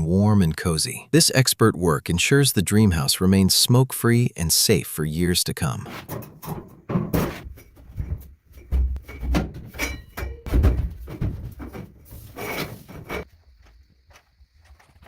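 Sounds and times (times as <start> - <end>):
rubbing and scraping on wood: 5.8 - 10.0, 10.6 - 13.3.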